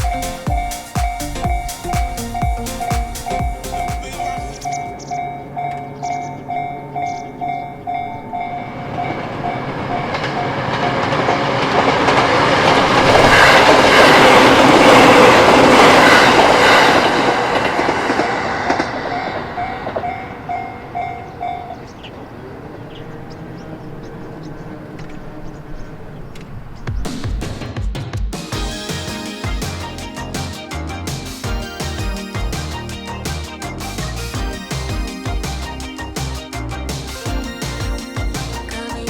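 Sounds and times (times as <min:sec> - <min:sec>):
level crossing bell clanging: 0:00.0 - 0:11.4, 0:19.1 - 0:21.9, 0:37.3 - 0:39.0
train wheels clattering on rails: 0:08.6 - 0:21.8.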